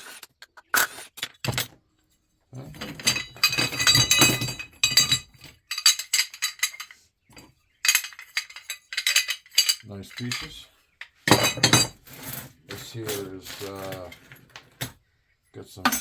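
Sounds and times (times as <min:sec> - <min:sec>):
metal fan parts clinking: 0:02.6 - 0:14.4.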